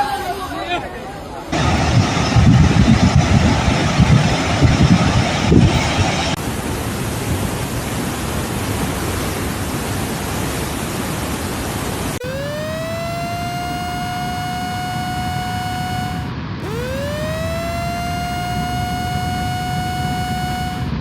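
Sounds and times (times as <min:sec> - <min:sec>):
wind buffeting microphone: 0:01.6 - 0:06.3
siren rising in pitch: 0:01.6 - 0:06.4, 0:12.2 - 0:21.0.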